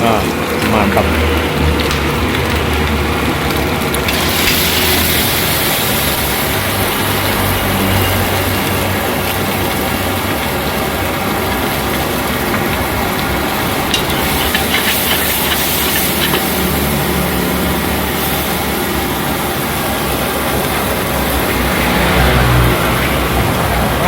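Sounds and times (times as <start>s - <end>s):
noodles frying in a wok: 0.0s - 24.0s
spatula scraping a wok: 13.2s - 17.6s.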